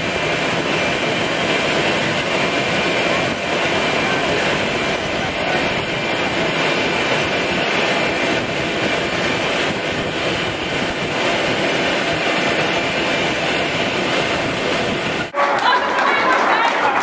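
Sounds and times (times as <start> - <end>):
aircraft cabin engine noise: 0.0 - 15.4.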